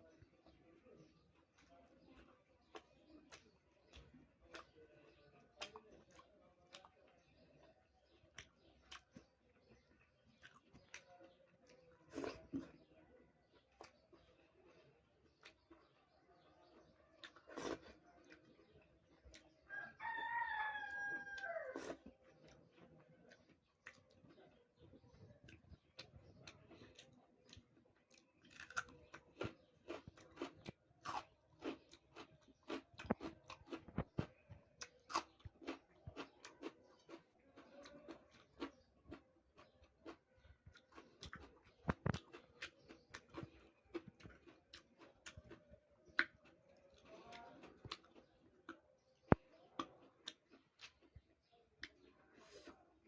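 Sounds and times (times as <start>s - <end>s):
person chewing and crunching food: 0.0s - 53.0s
rooster crowing: 19.7s - 21.8s.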